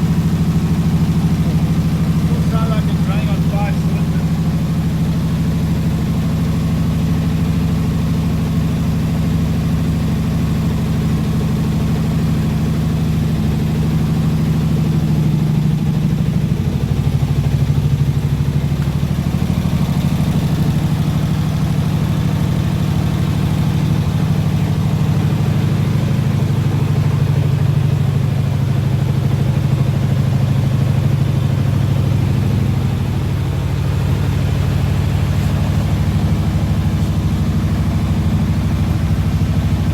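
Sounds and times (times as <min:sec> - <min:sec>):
engine idling: 0:00.0 - 0:39.9.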